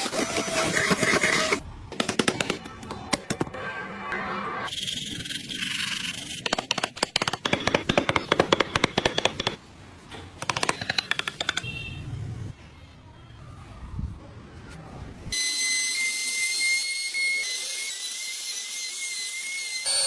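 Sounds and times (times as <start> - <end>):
tools clicking and scraping wood: 0.0 - 3.5, 4.7 - 11.8.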